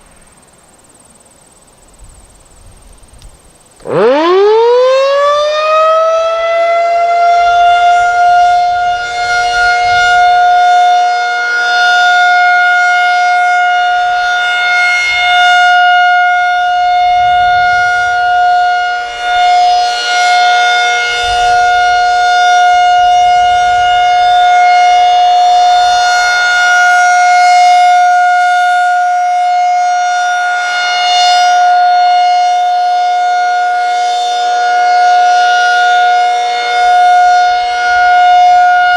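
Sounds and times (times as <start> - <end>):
warning siren steady tone: 3.7 - 38.9.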